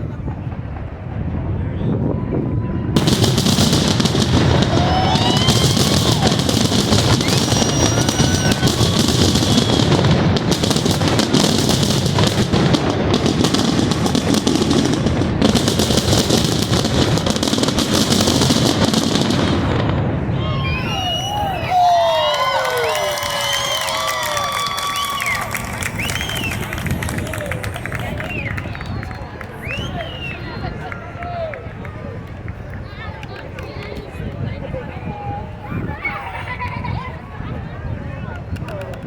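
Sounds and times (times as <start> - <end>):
fireworks bangs and crackling: 0.0 - 39.0
firework whistles: 2.9 - 19.4, 20.4 - 30.7.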